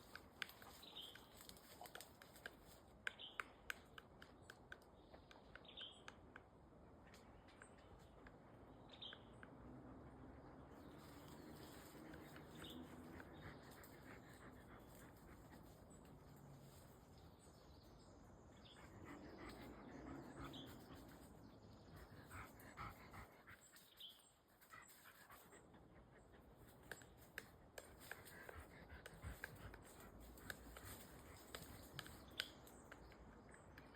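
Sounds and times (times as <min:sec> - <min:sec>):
dog panting: 0:11.6 - 0:16.4, 0:18.6 - 0:32.3.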